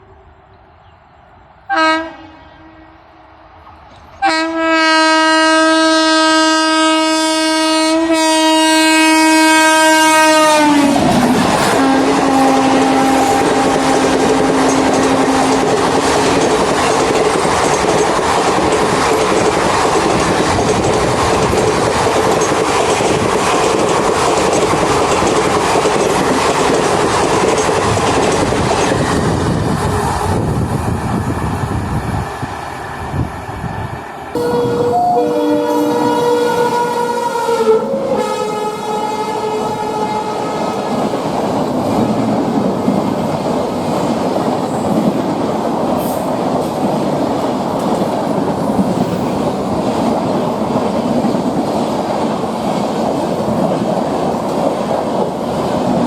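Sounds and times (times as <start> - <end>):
locomotive air horn: 1.7 - 3.0, 4.2 - 11.1, 11.7 - 15.7, 34.4 - 40.9
train coaches rushing past: 8.9 - 56.0.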